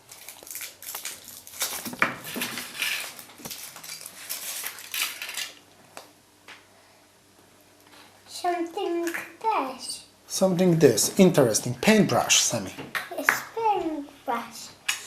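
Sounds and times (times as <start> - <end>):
foil crinkling: 0.0 - 5.6.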